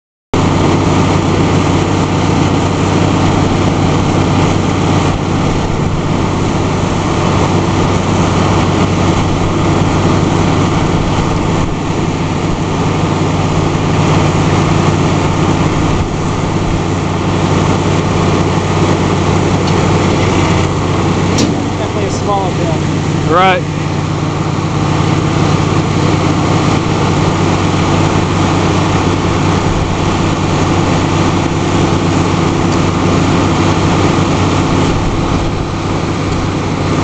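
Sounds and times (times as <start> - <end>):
baler machine droning: 0.4 - 37.0.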